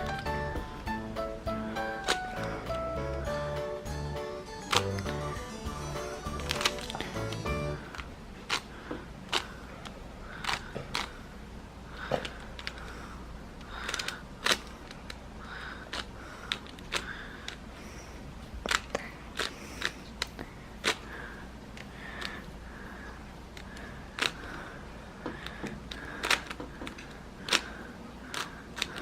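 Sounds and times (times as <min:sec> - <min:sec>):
puzzle cube clicking: 0:00.0 - 0:00.8, 0:01.8 - 0:03.3, 0:04.5 - 0:08.7, 0:09.3 - 0:09.5, 0:10.4 - 0:11.2, 0:12.2 - 0:12.9, 0:13.6 - 0:15.2, 0:15.9 - 0:17.6, 0:18.6 - 0:21.1, 0:23.5 - 0:24.6, 0:25.4 - 0:27.7, 0:28.3 - 0:29.0.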